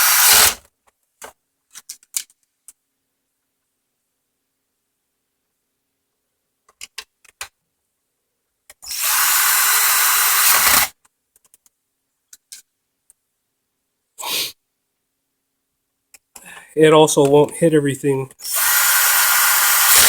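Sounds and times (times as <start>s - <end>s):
cordless power driver running: 0.0s - 0.6s, 8.9s - 10.9s, 18.4s - 20.0s
light clicks of plastic parts: 0.8s - 2.8s, 11.0s - 13.2s.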